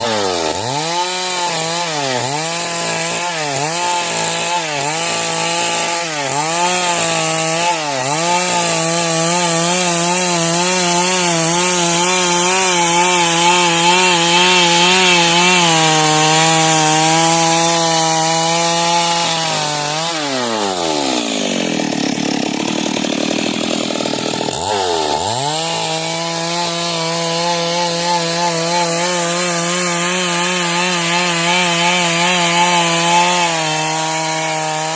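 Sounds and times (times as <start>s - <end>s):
chainsaw ripping through wood: 0.0s - 34.9s.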